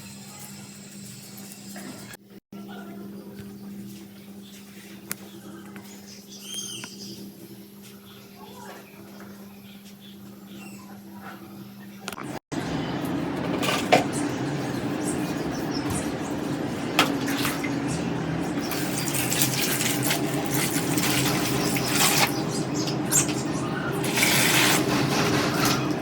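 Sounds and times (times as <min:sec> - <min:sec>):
low hum: 0:12.2 - 0:26.0
water running: 0:12.3 - 0:26.0.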